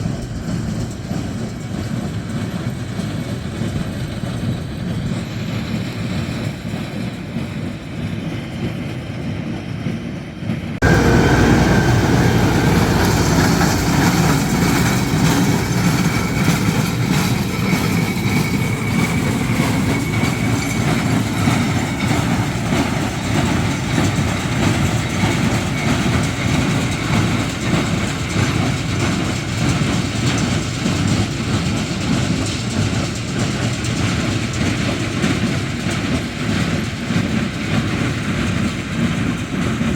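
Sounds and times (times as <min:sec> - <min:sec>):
tractor running: 0:10.8 - 0:36.4.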